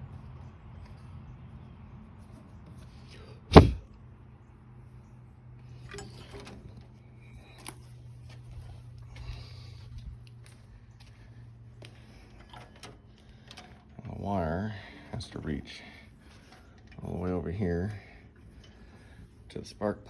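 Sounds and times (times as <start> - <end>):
sharp knock: 3.5 - 3.8.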